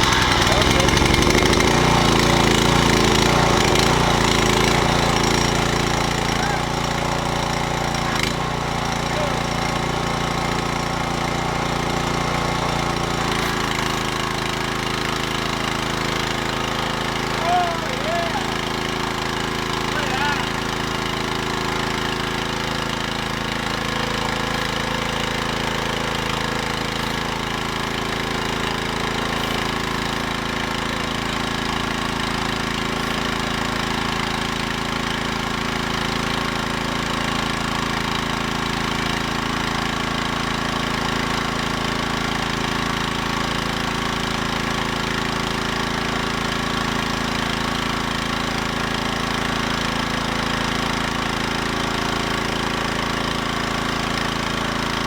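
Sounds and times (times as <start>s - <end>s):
high-pressure water hiss: 0.0s - 4.0s
pressure washer engine running: 0.0s - 55.0s.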